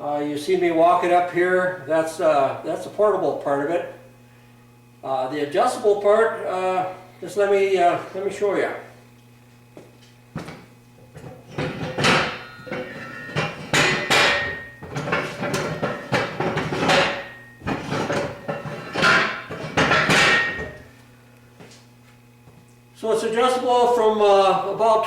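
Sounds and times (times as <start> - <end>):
heavy metal clanks: 11.5 - 20.8.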